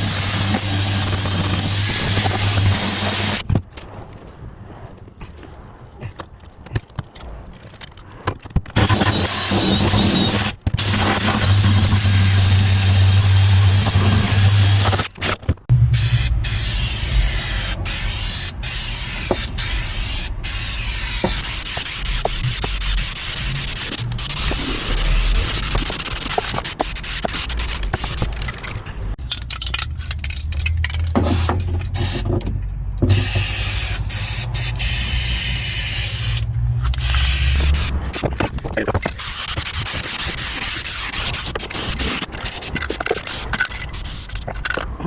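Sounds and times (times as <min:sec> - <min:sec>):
power tool scouring metal: 0:00.0 - 0:03.4, 0:08.8 - 0:15.2.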